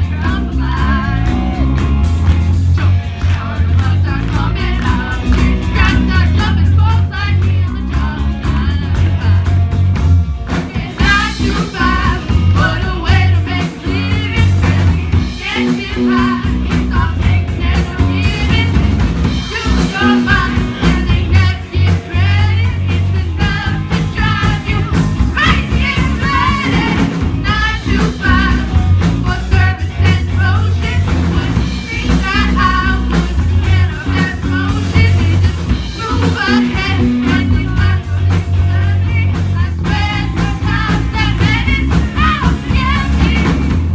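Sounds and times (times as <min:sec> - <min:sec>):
live rock band playing: 0:00.0 - 0:43.9
person singing: 0:10.5 - 0:43.9.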